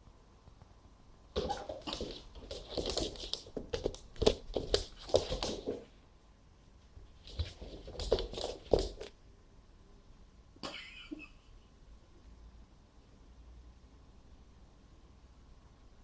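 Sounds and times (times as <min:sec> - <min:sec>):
cat paws scrabbling on floor: 0:01.3 - 0:06.0, 0:06.8 - 0:09.2.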